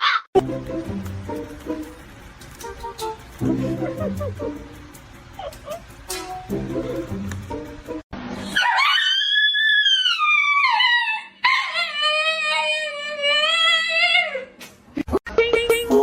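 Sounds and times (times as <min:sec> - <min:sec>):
dog howling: 0:08.6 - 0:14.2.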